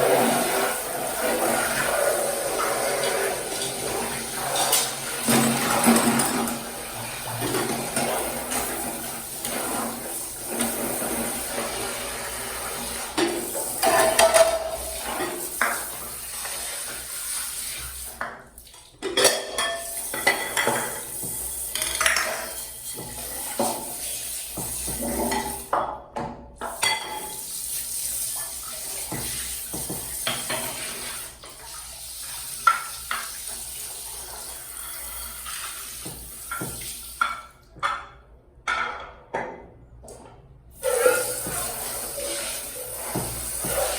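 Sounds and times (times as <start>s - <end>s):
water running: 0.0s - 25.8s, 26.6s - 38.2s, 40.0s - 43.9s
dishes and cutlery clattering: 4.5s - 6.6s, 13.2s - 15.9s, 19.0s - 23.8s, 24.9s - 27.4s.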